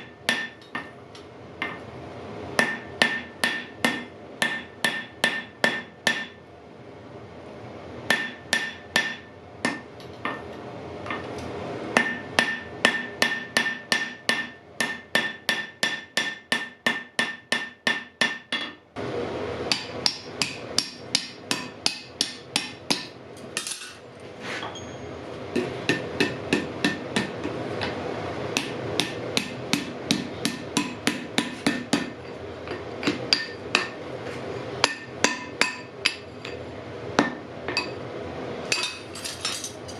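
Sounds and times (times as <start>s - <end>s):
hammer striking iron on anvil: 0.0s - 1.0s, 1.6s - 1.8s, 2.6s - 6.4s, 8.1s - 10.5s, 11.9s - 18.8s, 19.7s - 24.0s, 25.5s - 28.0s, 28.6s - 34.0s, 34.8s - 36.6s, 37.2s - 38.0s, 38.7s - 39.6s.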